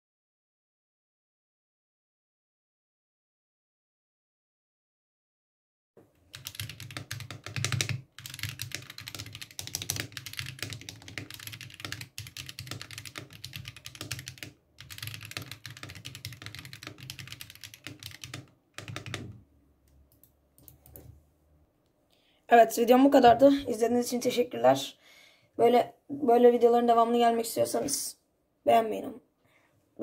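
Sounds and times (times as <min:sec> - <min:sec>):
fast mechanical keyboard typing: 0:06.3 - 0:19.4.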